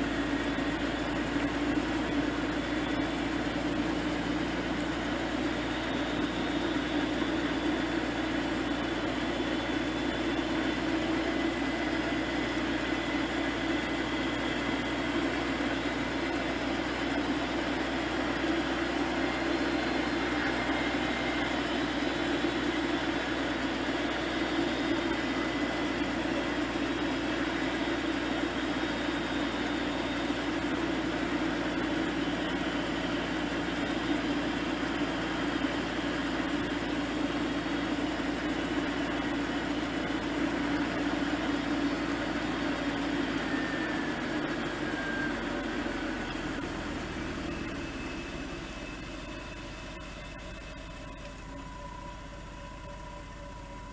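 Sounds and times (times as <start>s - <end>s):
car engine running: 0.0s - 53.9s
faint engine whine: 0.0s - 53.9s
sharp high-pitched squeaks: 46.2s - 47.6s.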